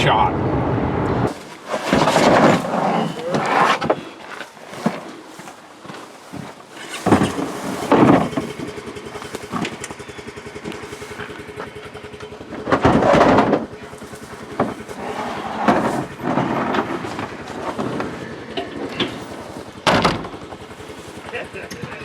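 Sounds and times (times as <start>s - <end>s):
vehicle engine starting and running: 0.0s - 22.0s.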